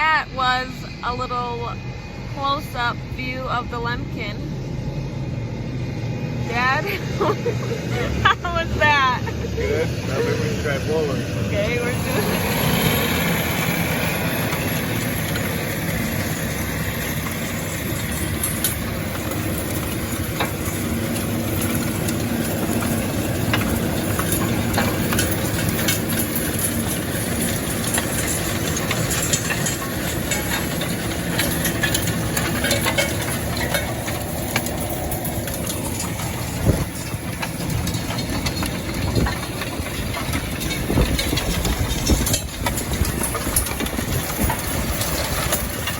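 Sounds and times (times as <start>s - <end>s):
farm vehicle engine running: 0.0s - 45.9s.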